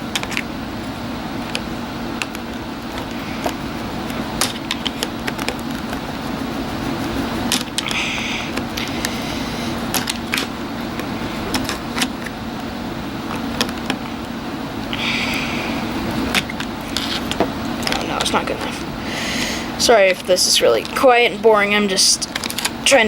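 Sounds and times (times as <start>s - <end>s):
steady low hum: 0.0s - 23.0s
scratchy rasp: 3.0s - 9.8s.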